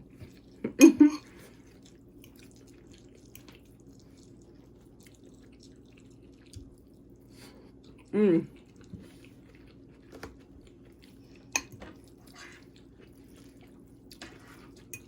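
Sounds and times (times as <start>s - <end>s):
person quietly chewing: 0.0s - 15.0s.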